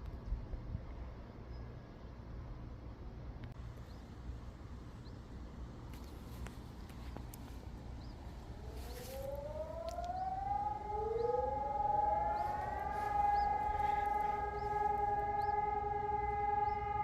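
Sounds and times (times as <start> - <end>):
electronic siren winding up: 8.6 - 17.0
lower siren winding up: 8.6 - 17.0.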